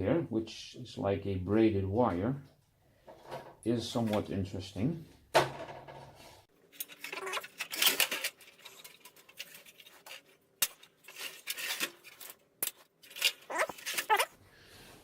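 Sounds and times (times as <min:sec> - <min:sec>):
hands handling wires and metal parts: 0:06.6 - 0:14.4.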